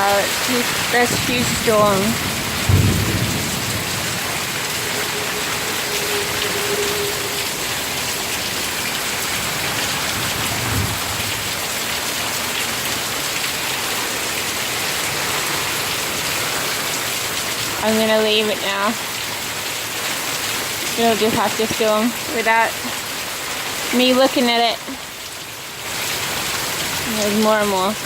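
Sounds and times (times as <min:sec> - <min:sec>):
heavy rain pouring: 0:00.0 - 0:28.0
low thunder rumble: 0:00.6 - 0:11.6.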